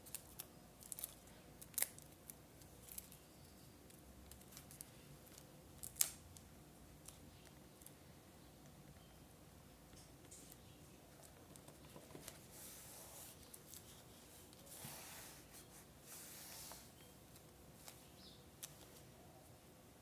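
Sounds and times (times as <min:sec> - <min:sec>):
paper sliding swishes: 0:14.7 - 0:17.0.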